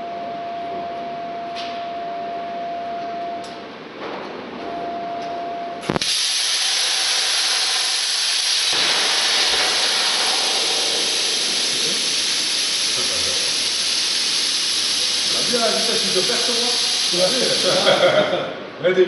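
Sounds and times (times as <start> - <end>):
loud steady hiss: 5.8 - 18.8.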